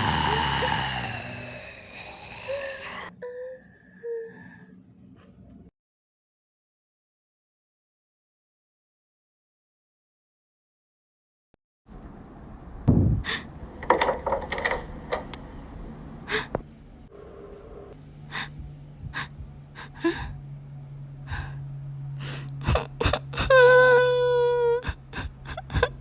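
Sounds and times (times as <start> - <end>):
person gasping: 0.0 - 4.6, 18.3 - 20.4, 22.2 - 23.8, 24.6 - 26.0
steady low hum: 0.0 - 5.7, 11.9 - 26.0.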